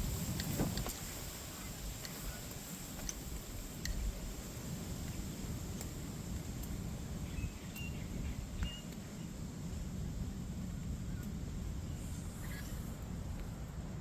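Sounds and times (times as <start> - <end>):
steady low rumble: 0.0 - 14.0
faint bird chirps: 7.2 - 8.9.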